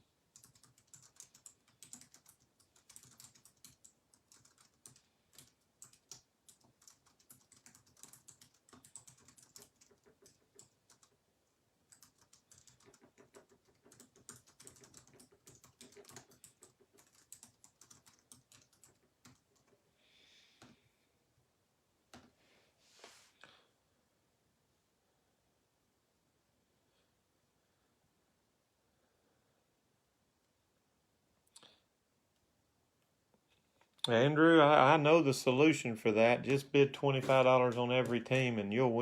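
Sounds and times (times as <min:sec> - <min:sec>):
faint keyboard typing: 0:00.3 - 0:19.9.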